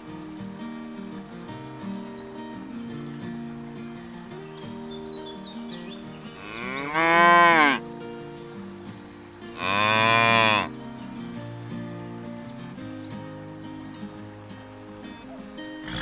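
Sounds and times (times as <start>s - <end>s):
cattle mooing: 6.4s - 7.8s, 9.6s - 10.7s.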